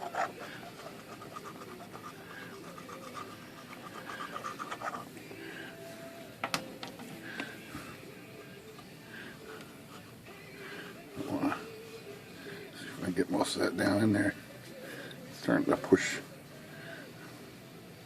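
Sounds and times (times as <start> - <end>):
glue applicator scratching: 0.0 - 5.1.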